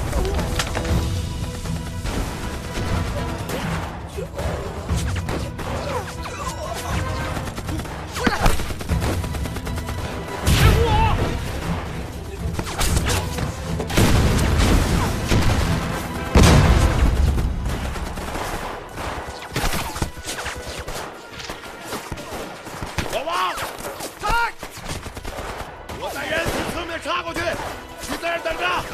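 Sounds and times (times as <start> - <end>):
film music: 0.0 - 28.9
gunfire: 1.5 - 4.1, 6.8 - 13.3, 13.9 - 28.2
heavy blasts: 13.9 - 19.4.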